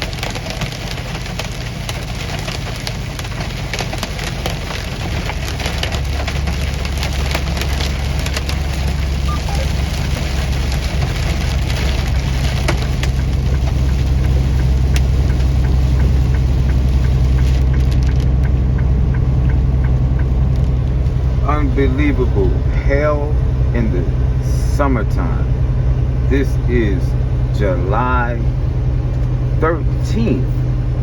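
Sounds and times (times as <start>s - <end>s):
hailstones striking vehicle: 0.0s - 19.2s
engine and road drone: 0.0s - 31.0s.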